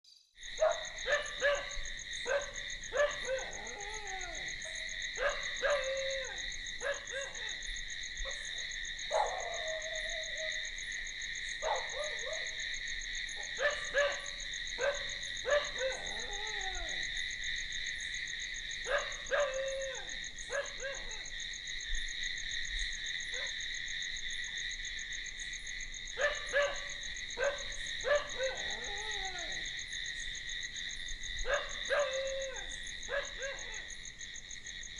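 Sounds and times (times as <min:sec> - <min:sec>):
crickets trilling: 0:00.4 - 0:34.9
distant animal calls falling in pitch: 0:00.6 - 0:07.6, 0:13.5 - 0:17.2, 0:26.2 - 0:29.8.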